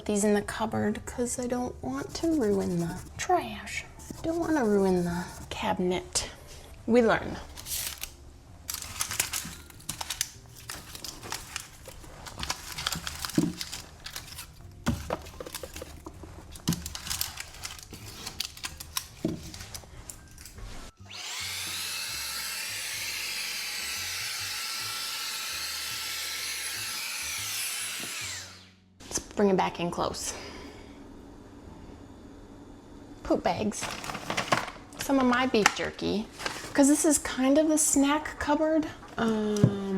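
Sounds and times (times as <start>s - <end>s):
household items clicking and knocking: 8.7s - 20.6s
loud high whirring: 21.0s - 28.7s.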